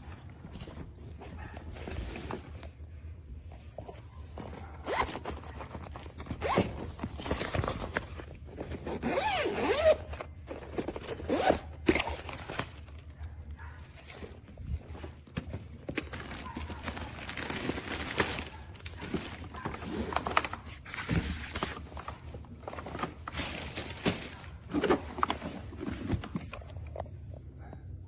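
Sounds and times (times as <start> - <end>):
zipper pulled open and shut: 4.4 - 12.8, 19.0 - 20.6.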